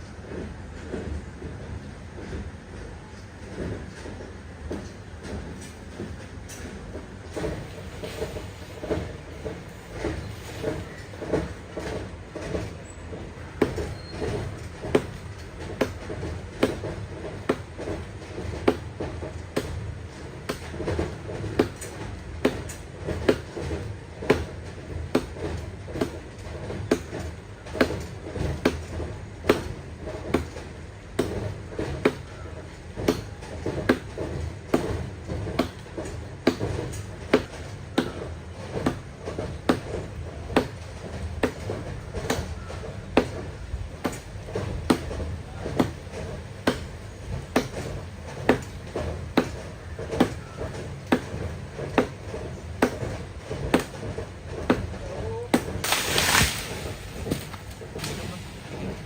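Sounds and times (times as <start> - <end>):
axe chopping wood: 15.8 - 16.8, 17.5 - 17.7, 21.6 - 23.5, 24.2 - 24.5, 25.1 - 25.4, 26.0 - 26.2, 26.9 - 27.2, 27.8 - 28.9, 29.5 - 29.7, 30.3 - 30.6, 31.2 - 32.2, 33.0 - 34.1, 34.7 - 35.0, 35.6 - 35.8, 36.4 - 38.2, 39.7 - 40.0, 42.3 - 42.5, 44.0 - 44.2, 44.9 - 45.2, 46.6 - 46.9, 47.5 - 47.9, 48.5 - 48.7, 49.4 - 49.6, 50.2 - 50.4, 51.1 - 51.3, 52.0 - 52.2, 52.8 - 54.0, 55.5 - 58.6.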